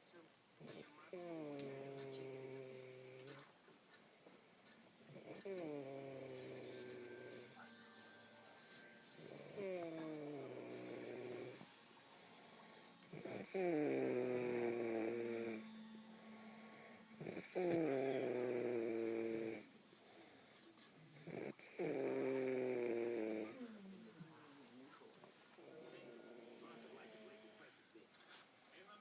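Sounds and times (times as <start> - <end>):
quiet breaths: 0.0 - 29.0
man snoring: 0.7 - 3.3, 5.1 - 7.6, 9.2 - 11.6, 13.1 - 15.7, 16.4 - 19.7, 21.2 - 23.6, 25.6 - 27.6.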